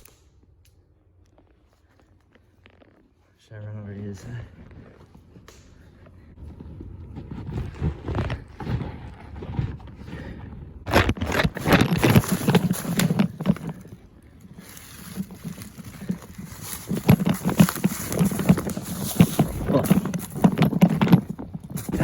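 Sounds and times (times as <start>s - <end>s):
handheld camera rustle: 0.0s - 3.4s, 4.4s - 22.0s
footsteps crunching dry leaves: 11.0s - 22.0s.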